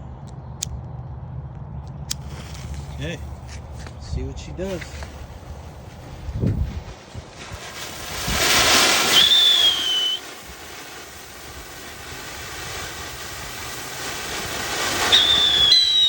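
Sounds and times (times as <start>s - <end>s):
fireworks fountain hissing: 2.2s - 16.0s
high whistle: 8.9s - 10.4s, 15.0s - 16.0s.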